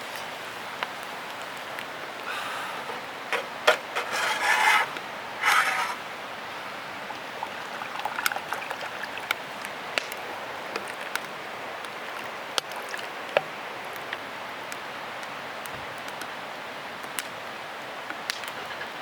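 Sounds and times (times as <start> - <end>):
steady hiss: 0.0 - 19.0
rasping scrapes: 3.7 - 6.0.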